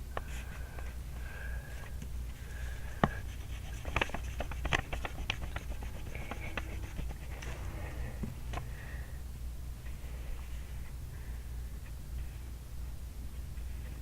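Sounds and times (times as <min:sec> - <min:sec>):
pen scratching on paper: 0:03.0 - 0:07.6.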